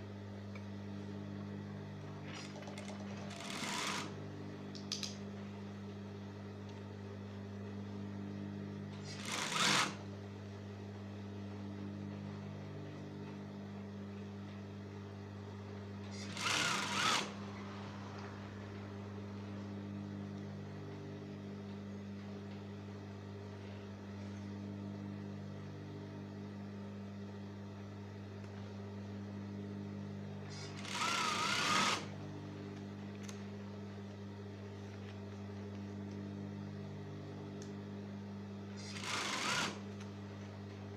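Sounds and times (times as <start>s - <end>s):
sewing machine motor humming: 2.3s - 4.2s, 8.9s - 10.1s, 16.1s - 19.0s, 30.5s - 32.3s, 38.7s - 40.1s
sewing machine stitching: 2.3s - 4.2s, 9.0s - 10.1s, 16.1s - 17.4s, 30.5s - 32.2s, 38.8s - 39.9s.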